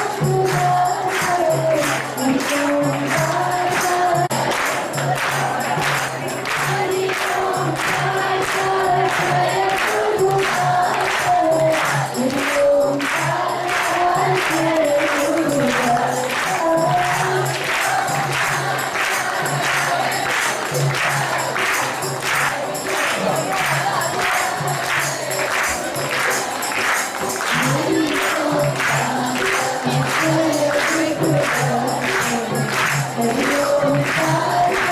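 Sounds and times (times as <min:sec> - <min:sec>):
devotional singing: 0:00.0 - 0:34.9
jingling hand percussion: 0:00.0 - 0:34.9.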